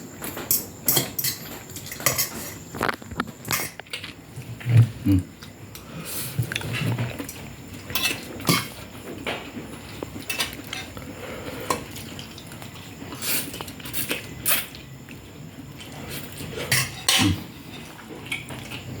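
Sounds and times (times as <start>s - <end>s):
utensils clinking on dishes: 0.2s - 4.2s, 5.4s - 14.8s, 15.8s - 19.0s.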